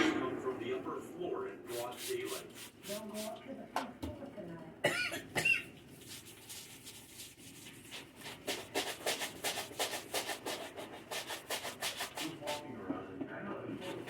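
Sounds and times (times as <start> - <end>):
cloth scrubbing fridge surface: 1.6 - 3.4, 5.6 - 12.7, 13.8 - 14.0.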